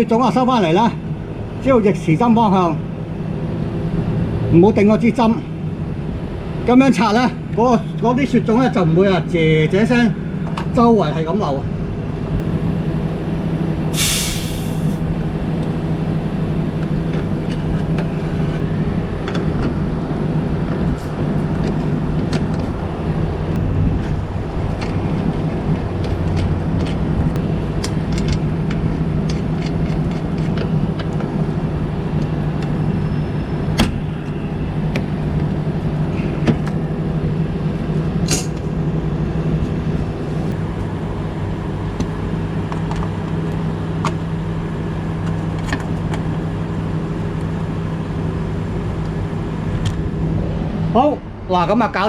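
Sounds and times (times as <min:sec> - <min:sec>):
air conditioner unit humming: 0:12.3 - 0:20.6
refrigerant gas hiss: 0:12.4 - 0:16.8.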